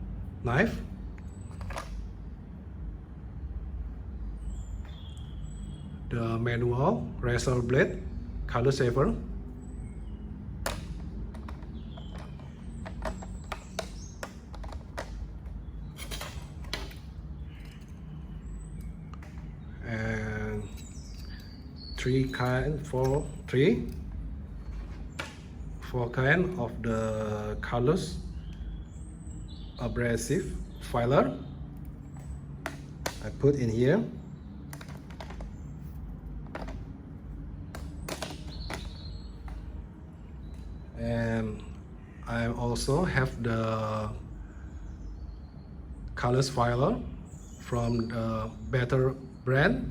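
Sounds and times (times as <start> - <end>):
steady low hum: 0.0 - 49.9
tools clicking and tapping: 10.6 - 19.5, 20.4 - 25.9, 31.8 - 33.4, 34.7 - 36.9, 37.7 - 39.7
small metal tools clicking: 16.0 - 19.4.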